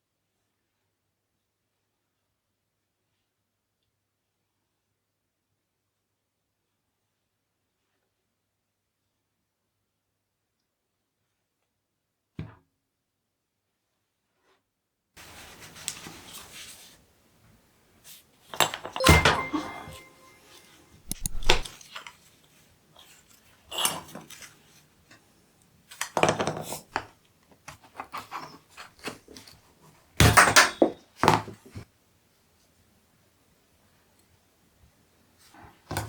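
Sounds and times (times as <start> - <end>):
metal objects clinking: 18.7 - 20.4, 21.1 - 21.7
metal ringing: 19.0 - 20.4.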